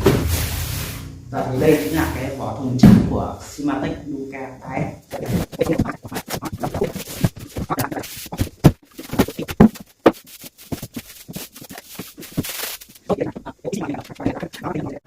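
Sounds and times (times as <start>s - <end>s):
packaging rustling: 5.1s - 13.1s
sharp thumps: 5.1s - 14.8s.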